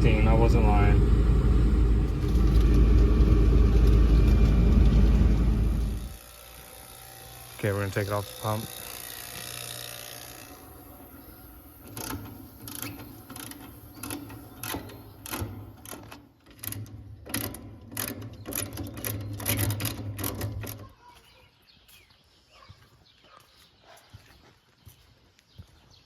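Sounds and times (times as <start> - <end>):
vacuum pump humming: 0.0 - 15.8.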